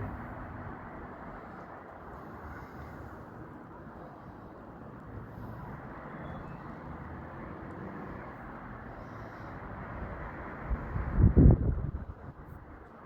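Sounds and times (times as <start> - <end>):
outdoor rumble: 0.0 - 4.4.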